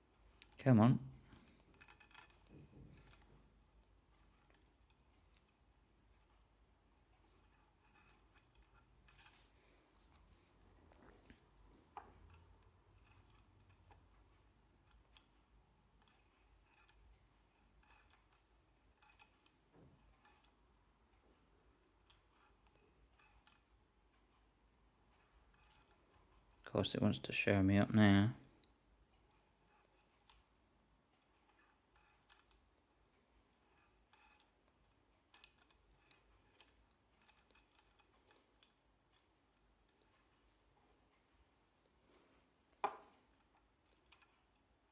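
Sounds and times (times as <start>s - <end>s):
lock-picking tools clicking: 1.2s - 3.4s, 11.3s - 20.7s, 22.0s - 26.6s, 29.3s - 40.8s, 42.8s - 44.9s.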